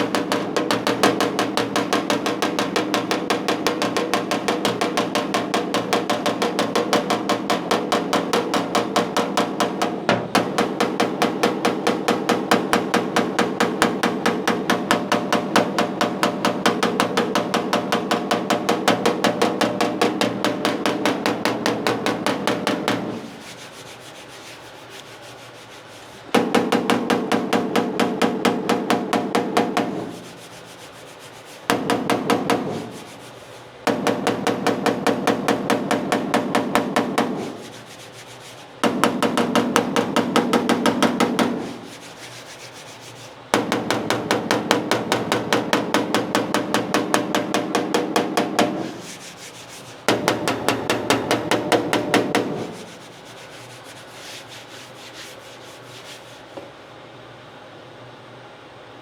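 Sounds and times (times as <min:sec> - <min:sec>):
quick strokes on steel fender: 0:23.1 - 0:26.3, 0:30.1 - 0:31.7, 0:32.7 - 0:33.8, 0:37.4 - 0:38.8, 0:41.6 - 0:43.4, 0:48.8 - 0:50.1, 0:52.6 - 0:56.6.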